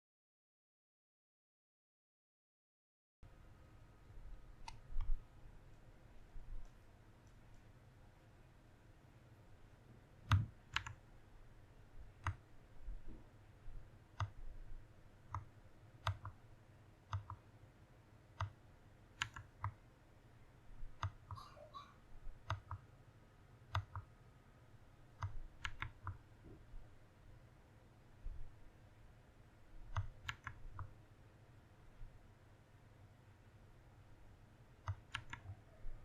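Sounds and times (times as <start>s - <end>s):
mechanical keyboard key clicks: 19.2s - 19.7s, 34.8s - 35.4s.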